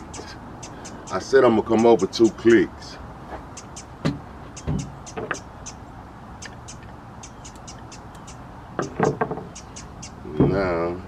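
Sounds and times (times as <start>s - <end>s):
birds chirping: 0.0s - 11.0s
handling knocks: 4.0s - 5.4s, 8.8s - 9.5s.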